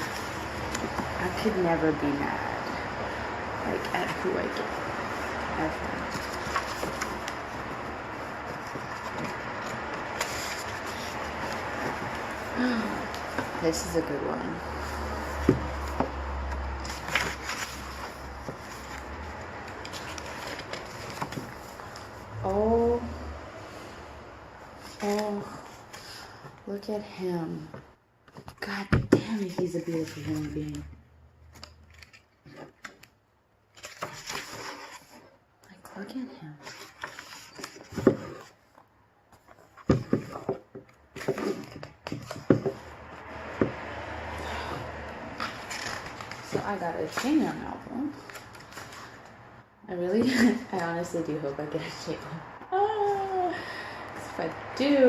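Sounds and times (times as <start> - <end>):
packaging rustling: 3.8 - 13.6, 16.6 - 22.3.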